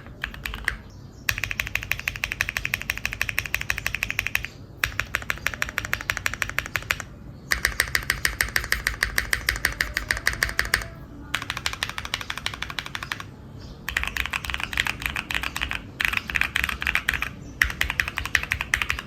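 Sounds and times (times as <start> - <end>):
fast mechanical keyboard typing: 0.0 - 13.3, 13.9 - 19.0.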